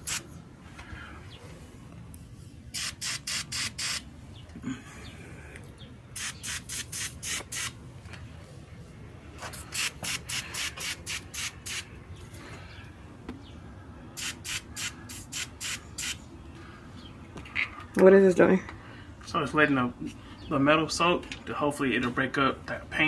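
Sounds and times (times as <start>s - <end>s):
aerosol spray can puffs: 0.0s - 0.3s, 2.7s - 4.1s, 6.1s - 7.8s, 9.4s - 11.9s, 14.2s - 16.2s.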